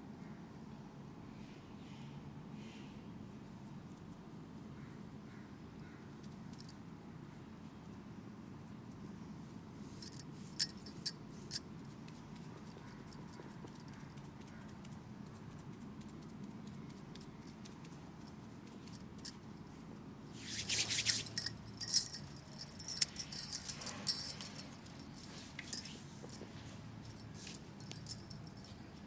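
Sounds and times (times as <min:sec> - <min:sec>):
light jingling and rustling: 0:10.0 - 0:29.0.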